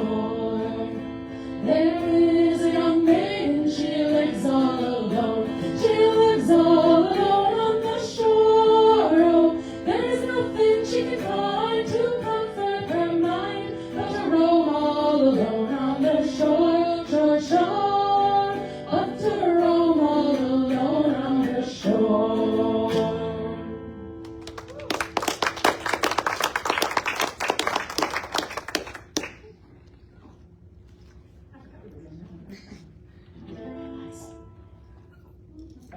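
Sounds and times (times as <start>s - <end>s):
vocal group singing in harmony: 0.0s - 23.8s
audience applause: 24.3s - 29.5s.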